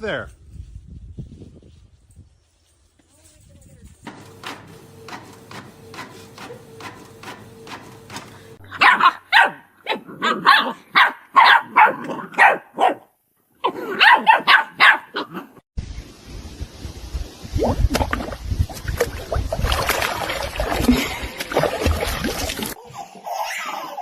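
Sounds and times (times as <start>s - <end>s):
dog barking: 8.7s - 15.5s.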